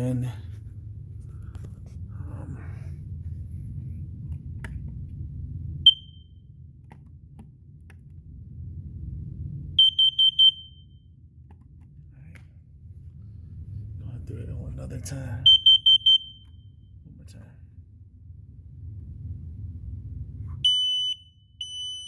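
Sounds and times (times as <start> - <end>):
smoke alarm beeps: 5.8 - 6.5, 9.8 - 11.2, 15.4 - 17.0, 20.6 - 22.0
smoke alarm chirp: 5.8 - 6.5, 9.8 - 11.1, 15.4 - 17.0, 20.6 - 22.0.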